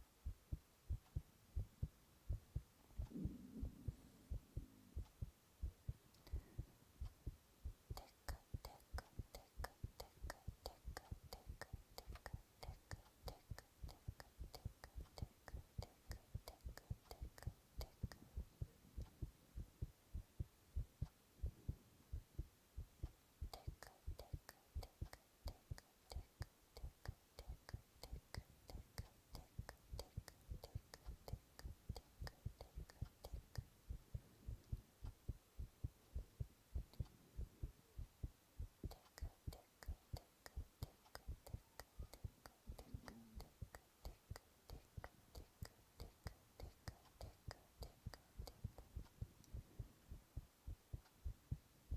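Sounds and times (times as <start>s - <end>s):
heartbeat thuds: 0.0s - 11.6s, 15.6s - 24.5s, 30.8s - 39.0s, 48.5s - 51.9s.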